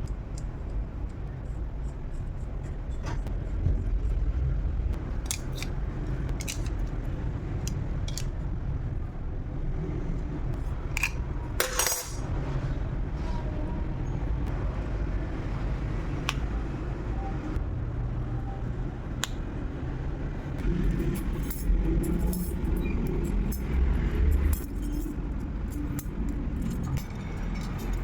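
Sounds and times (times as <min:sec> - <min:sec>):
steady low rumble: 0:00.0 - 0:28.0
metallic clicks of small tools: 0:05.2 - 0:07.0, 0:07.6 - 0:08.4, 0:22.3 - 0:28.0.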